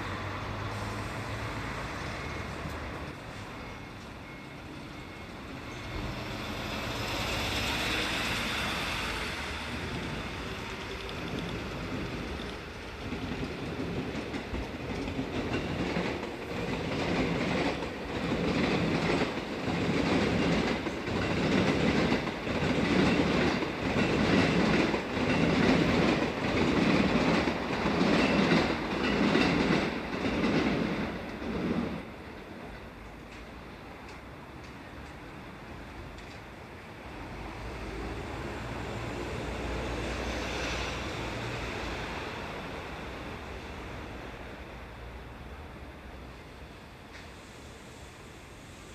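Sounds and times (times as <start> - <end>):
train wheels clickety-clack: 6.0 - 35.3, 36.0 - 36.6.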